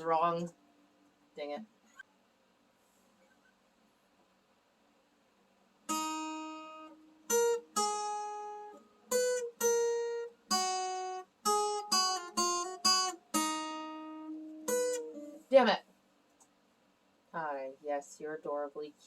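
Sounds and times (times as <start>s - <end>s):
acoustic guitar strums: 5.9s - 15.6s.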